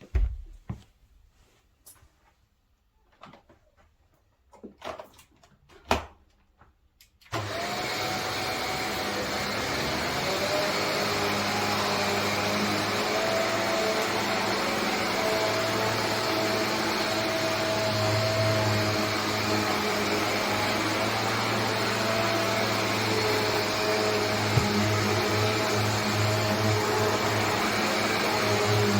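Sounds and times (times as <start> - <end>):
vacuum cleaner running: 7.3 - 28.9.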